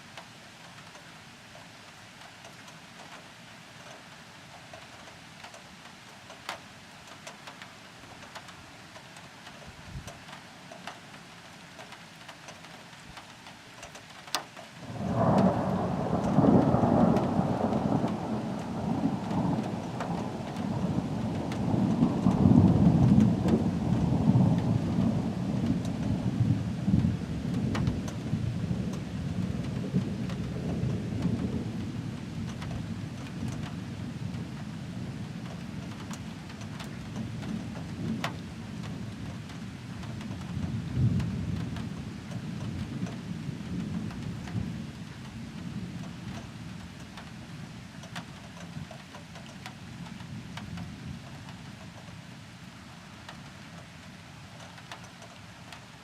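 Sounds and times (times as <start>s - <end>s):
faint rain: 0.0s - 56.0s
thunderclap rumbling: 14.8s - 46.4s.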